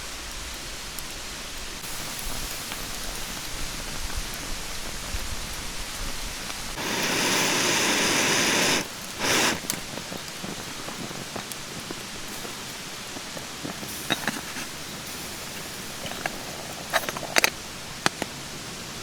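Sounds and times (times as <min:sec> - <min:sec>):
loud hiss: 0:00.0 - 0:19.0
stream rushing: 0:06.7 - 0:19.0.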